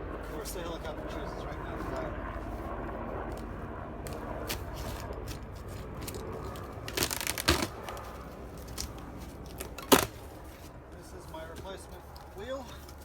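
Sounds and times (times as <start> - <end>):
helicopter rumble overhead: 0.0 - 13.0
objects being handled: 4.1 - 10.7.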